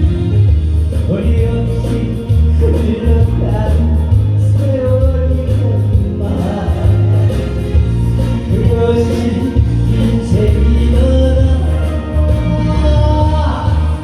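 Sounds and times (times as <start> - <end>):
loud music with steady beat: 0.0 - 14.0.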